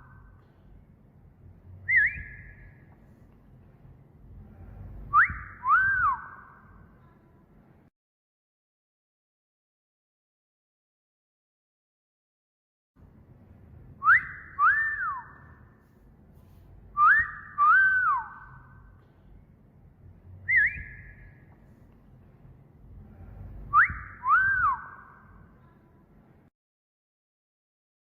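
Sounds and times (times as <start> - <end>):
wolf whistle: 1.8 - 2.8, 5.1 - 6.6, 14.0 - 15.6, 17.0 - 18.8, 20.4 - 21.4, 23.7 - 25.3
short whistled note: 1.9 - 2.8.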